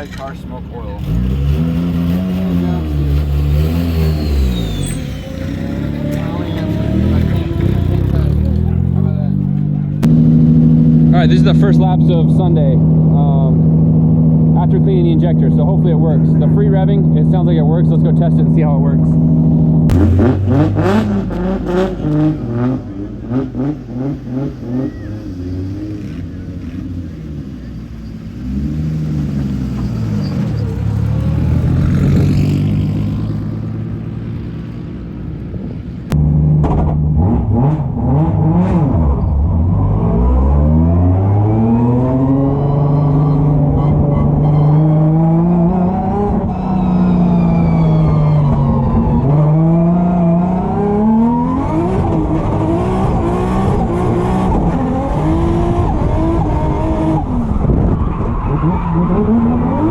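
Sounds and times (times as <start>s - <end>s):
tyre noise: 0.0s - 10.1s
car engine revving: 0.0s - 59.9s.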